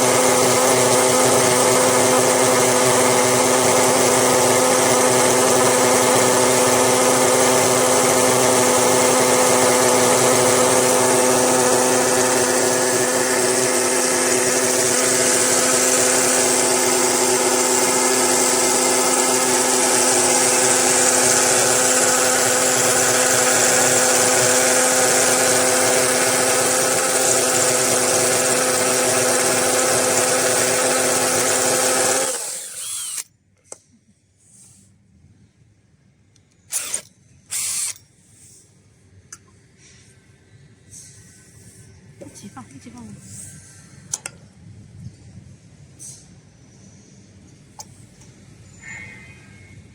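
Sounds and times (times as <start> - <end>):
electric drill motor whining: 0.0 - 33.3, 36.7 - 38.0.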